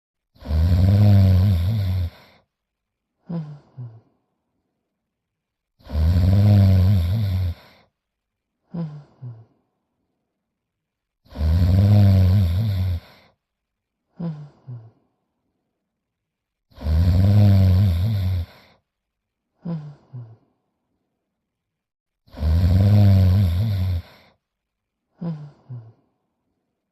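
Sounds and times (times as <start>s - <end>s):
cartoon dog snoring: 0.3s - 2.4s, 3.2s - 4.2s, 5.8s - 7.9s, 8.6s - 9.6s, 11.2s - 13.4s, 14.1s - 15.0s, 16.7s - 18.8s, 19.6s - 20.5s, 22.2s - 24.4s, 25.1s - 26.1s.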